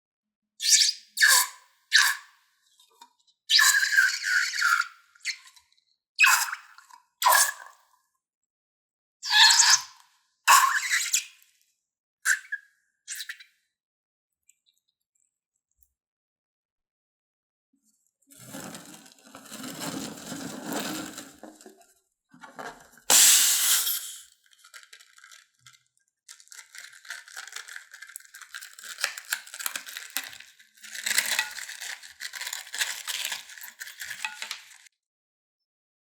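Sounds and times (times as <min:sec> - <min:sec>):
slime being worked in container: 0:18.2 - 0:34.9.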